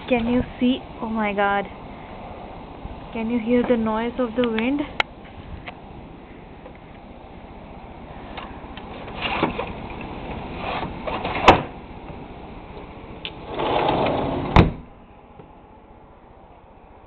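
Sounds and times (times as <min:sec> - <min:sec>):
strong wind gusting: 0:00.0 - 0:11.1.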